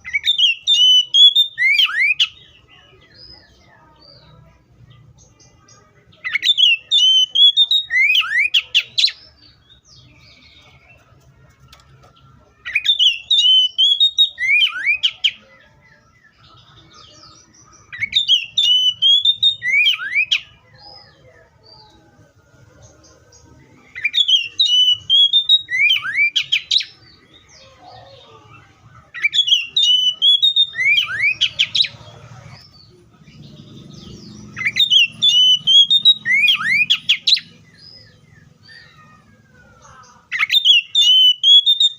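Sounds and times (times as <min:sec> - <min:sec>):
bird singing whistled notes: 0:00.0 - 0:04.2, 0:06.2 - 0:10.4, 0:12.6 - 0:21.1, 0:23.9 - 0:27.6, 0:29.1 - 0:32.0, 0:33.5 - 0:39.1, 0:40.2 - 0:41.9.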